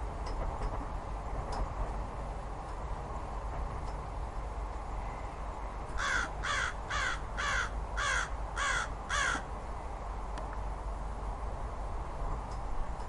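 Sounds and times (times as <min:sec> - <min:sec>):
steady low rumble: 0:00.0 - 0:13.0
crow cawing: 0:06.0 - 0:09.5.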